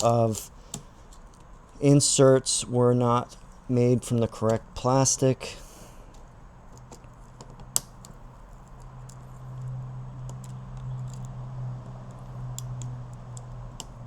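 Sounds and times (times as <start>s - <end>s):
low steady hum: 0.0s - 14.0s
plastic tool clicks and scratches: 6.7s - 14.0s.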